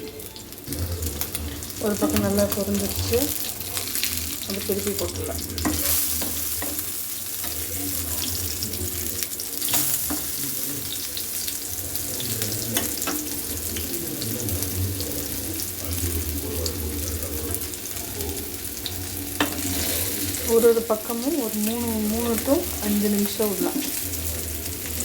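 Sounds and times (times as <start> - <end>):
fish frying in oil: 0.0 - 25.0.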